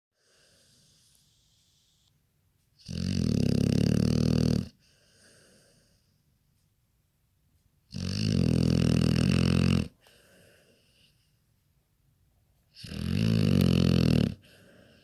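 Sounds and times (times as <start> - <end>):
faint breathing: 0.2 - 2.1, 4.8 - 6.4, 9.9 - 11.5, 14.4 - 15.0
loud fluttering snore: 2.8 - 4.7, 8.0 - 9.9, 12.8 - 14.4.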